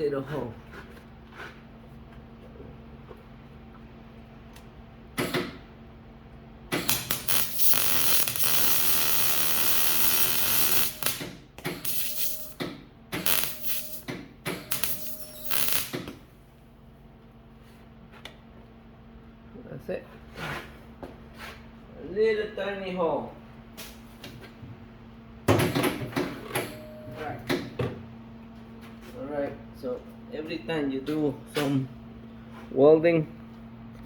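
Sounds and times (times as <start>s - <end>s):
welder arc crackling: 6.8s - 12.6s, 13.2s - 14.1s, 14.7s - 16.2s.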